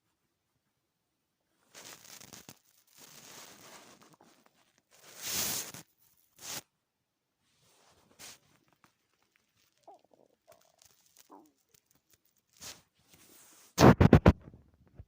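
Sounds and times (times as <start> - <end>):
stomach rumbling: 8.3 - 12.6.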